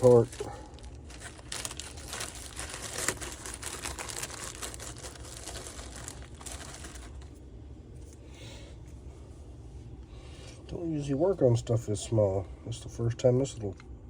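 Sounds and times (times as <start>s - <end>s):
crinkly rustling: 0.0s - 7.4s.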